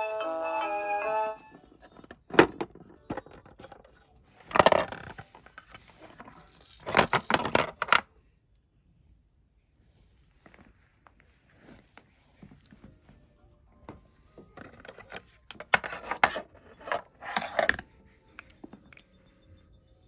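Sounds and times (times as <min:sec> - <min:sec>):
synthesized children's tune: 0:00.0 - 0:02.2
toy pieces clicking and rattling: 0:06.2 - 0:07.9.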